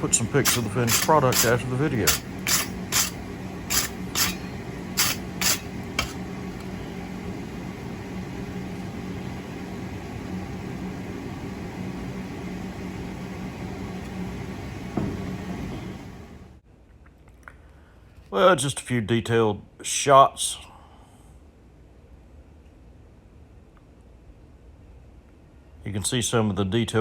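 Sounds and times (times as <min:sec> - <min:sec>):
wire brush scrubbing metal: 0:00.0 - 0:06.2
steady low hum: 0:00.0 - 0:16.7.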